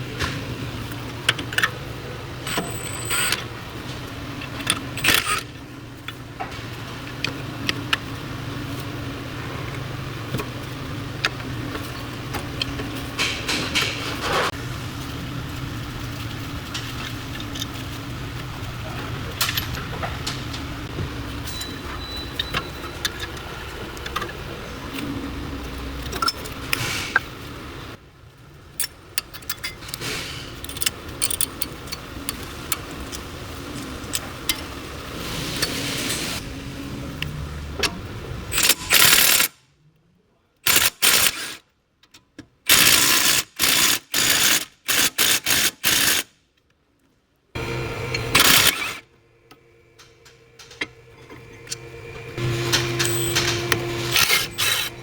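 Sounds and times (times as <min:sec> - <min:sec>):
metal tools clinking: 0:52.4 - 0:55.0.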